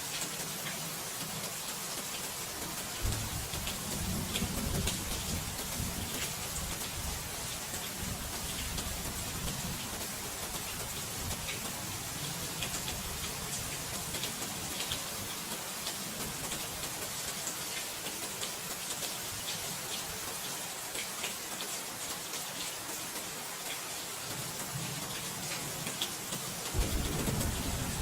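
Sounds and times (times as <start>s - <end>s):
steady rain hiss: 0.0s - 28.0s
raindrop ticks: 25.5s - 28.0s
low rumble: 26.8s - 28.0s.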